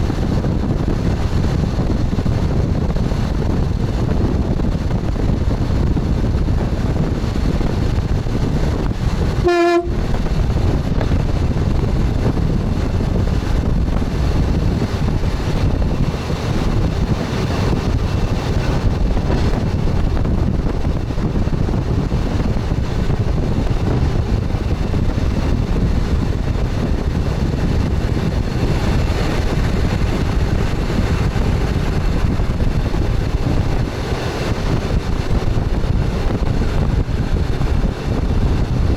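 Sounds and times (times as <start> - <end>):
train wheels rolling on rails: 0.0 - 38.9
train horn toot: 9.4 - 10.2.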